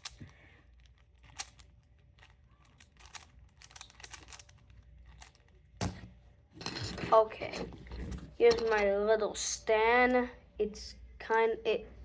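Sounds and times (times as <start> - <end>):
plastic cube clicks: 1.2 - 5.4.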